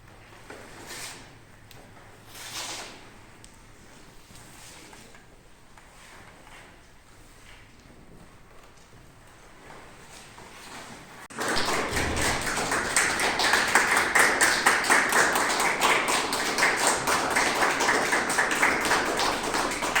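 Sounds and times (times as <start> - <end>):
audience applauding: 11.3 - 20.0.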